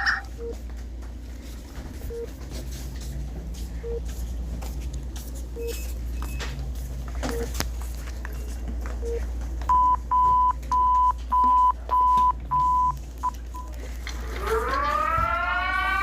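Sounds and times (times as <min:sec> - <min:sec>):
low steady hum: 0:00.0 - 0:16.0
warning siren wailing: 0:14.2 - 0:16.0.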